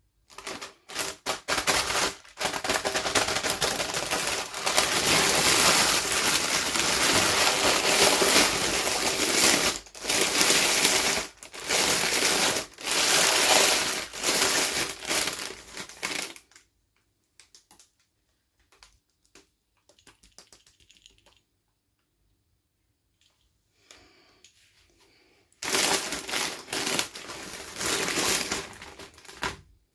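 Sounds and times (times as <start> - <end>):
packaging crinkling and tearing: 0.3 - 16.7, 25.6 - 29.7
small pieces clicking and tapping: 17.0 - 22.1.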